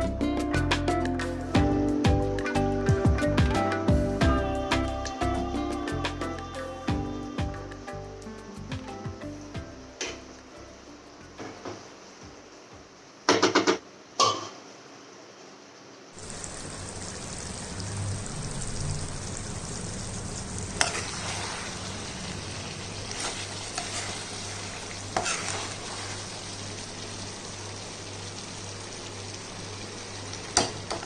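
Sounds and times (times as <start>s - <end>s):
food sizzling in a pan: 16.1s - 31.0s.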